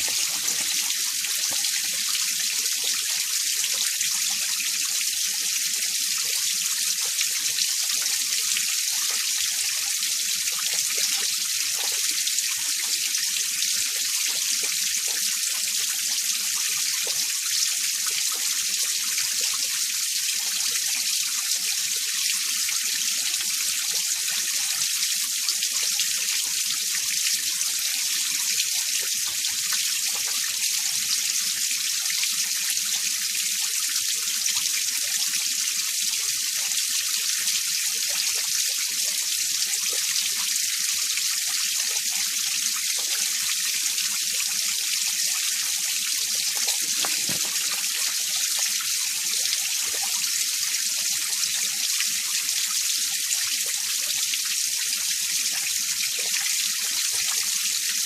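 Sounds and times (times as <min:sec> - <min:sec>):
stream flowing: 0:00.0 - 0:05.0, 0:42.8 - 0:52.4.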